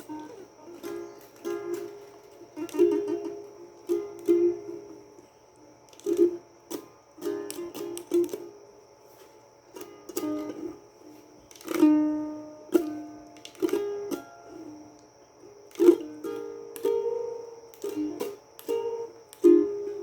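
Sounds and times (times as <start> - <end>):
plucked string instrument chords: 0.0 - 5.1
faint high whine: 0.0 - 20.0.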